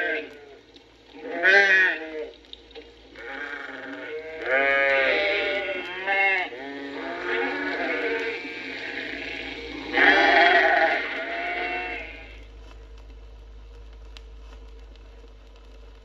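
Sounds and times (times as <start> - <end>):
faint steady hum: 0.0 - 16.0
sheep and lambs bleating: 1.2 - 2.3, 3.2 - 12.4.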